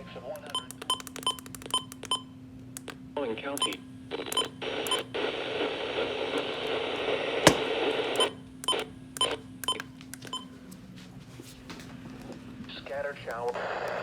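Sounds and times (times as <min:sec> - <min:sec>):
radio static hiss: 0:12.8 - 0:14.0.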